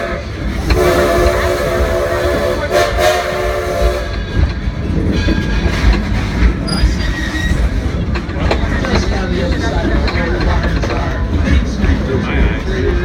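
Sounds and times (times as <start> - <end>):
steam locomotive whistle: 0.0 - 4.2
train running noise: 0.0 - 13.0
wheels clicking over rail joints: 4.1 - 13.0.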